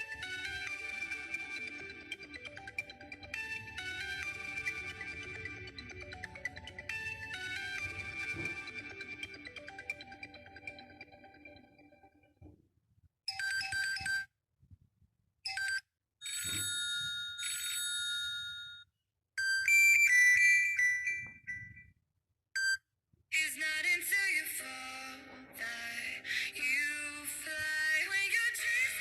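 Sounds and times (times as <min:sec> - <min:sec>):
melodic ringtone: 0:00.0 - 0:12.2, 0:13.3 - 0:14.3, 0:15.5 - 0:18.8, 0:19.4 - 0:21.9, 0:23.8 - 0:29.0
electronic chimes and jingles: 0:16.2 - 0:18.8.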